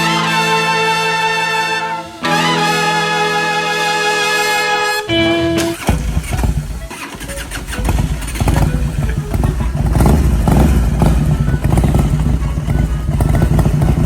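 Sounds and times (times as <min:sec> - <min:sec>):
engine rumbling: 0:00.0 - 0:14.0
brief tone: 0:05.1 - 0:06.0.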